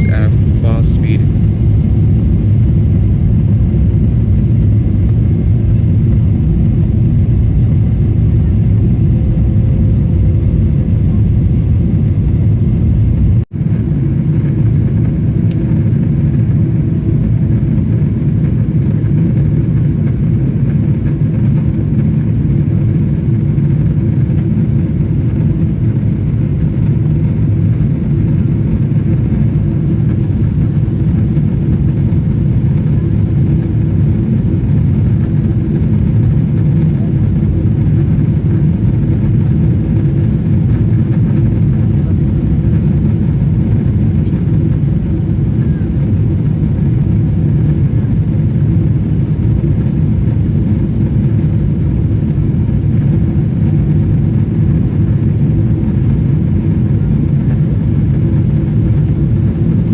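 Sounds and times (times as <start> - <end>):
aircraft engine noise: 0.0 - 59.9
cabin airflow: 53.4 - 59.9.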